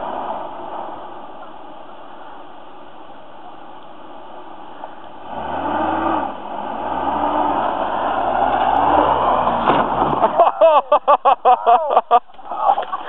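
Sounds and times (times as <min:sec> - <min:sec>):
car engine revving: 0:05.1 - 0:10.5.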